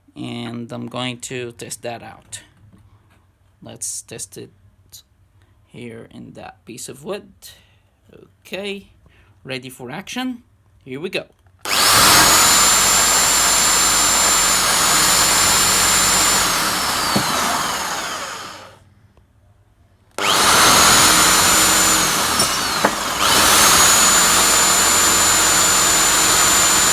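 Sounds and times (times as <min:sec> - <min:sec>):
electric drill boring into wood: 0:11.7 - 0:18.8, 0:20.2 - 0:26.9.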